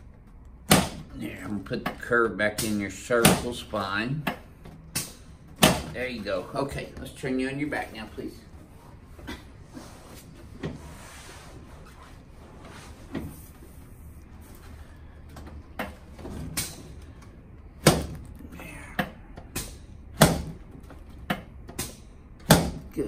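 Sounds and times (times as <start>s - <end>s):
soft rustling: 6.0s - 15.0s.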